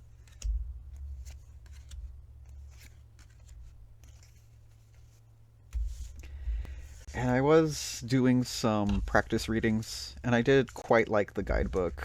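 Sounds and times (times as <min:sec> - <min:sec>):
cards and paper clicking and rustling: 0:00.0 - 0:07.1.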